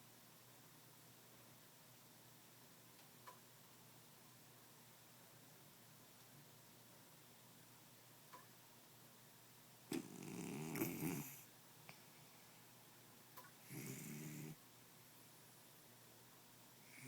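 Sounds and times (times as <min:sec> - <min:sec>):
cat snoring: 0:09.9 - 0:11.5, 0:13.6 - 0:14.6.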